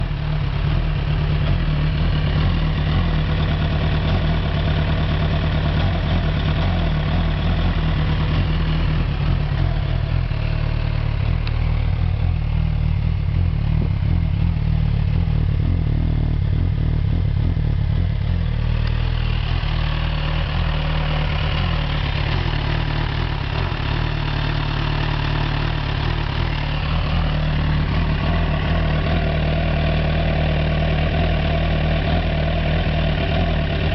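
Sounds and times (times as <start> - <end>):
motorcycle engine idling roughly: 0.0 - 33.9.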